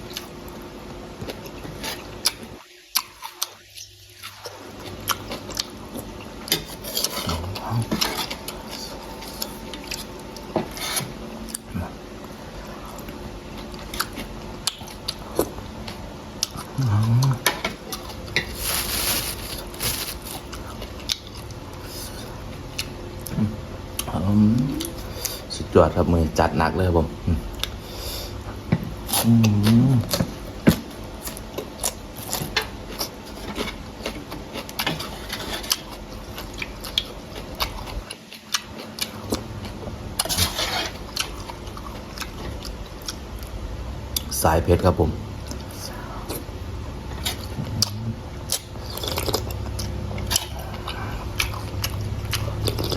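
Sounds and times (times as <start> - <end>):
person chewing soup: 0.0 - 25.6, 27.3 - 44.4, 45.3 - 52.9
eating sounds: 1.2 - 46.5, 47.1 - 52.9.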